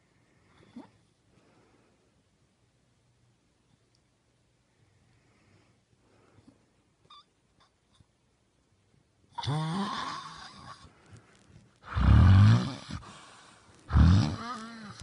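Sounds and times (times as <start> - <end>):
man snoring loudly: 9.4 - 10.4, 11.9 - 13.0, 13.9 - 15.0.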